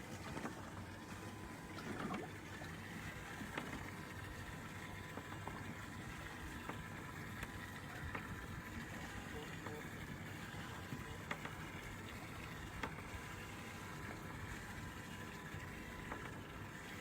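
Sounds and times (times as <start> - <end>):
water lapping against metal boat hull: 0.0 - 17.0
light clicks and taps: 10.9 - 11.6.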